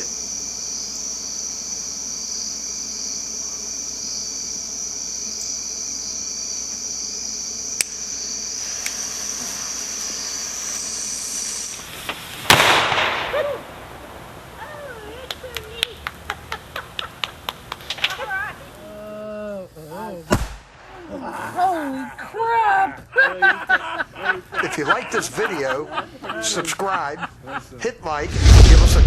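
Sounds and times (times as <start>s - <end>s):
crickets chirping: 0.0s - 29.0s
sharp click: 7.8s - 8.0s
crackling noise: 8.6s - 18.8s, 28.2s - 29.0s
firecracker bang: 11.3s - 14.9s, 20.3s - 21.0s, 28.3s - 29.0s.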